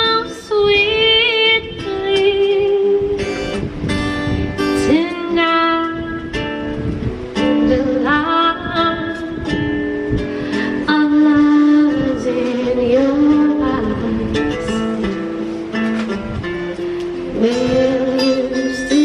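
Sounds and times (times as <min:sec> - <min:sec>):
guitar backing track: 0:00.0 - 0:19.0
woman singing karaoke: 0:00.0 - 0:19.0.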